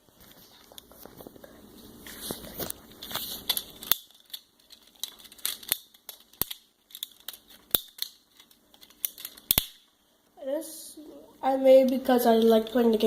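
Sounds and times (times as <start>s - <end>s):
plastic bricks clicking together: 3.5s - 9.8s.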